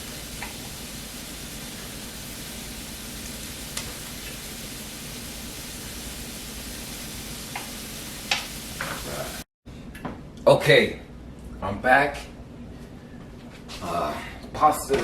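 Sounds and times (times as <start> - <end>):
meat sizzling in a pan: 0.0 - 9.4.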